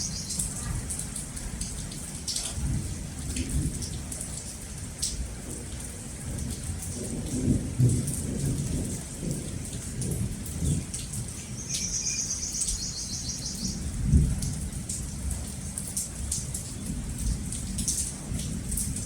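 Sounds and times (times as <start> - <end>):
steady rain: 0.0 - 19.0
bird trill: 11.6 - 13.8.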